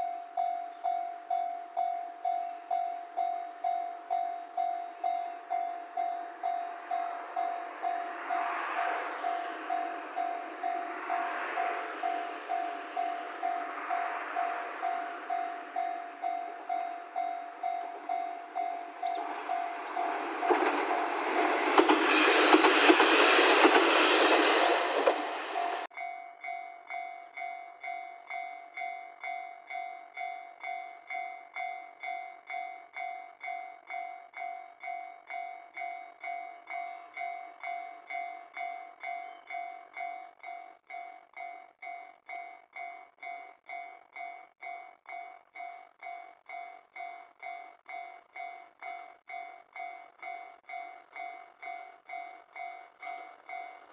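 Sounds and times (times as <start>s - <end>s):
level crossing bell ringing: 0.0s - 21.1s
level-crossing warning bell ringing: 0.0s - 23.6s, 24.2s - 53.9s
train wheels clattering: 16.2s - 25.9s.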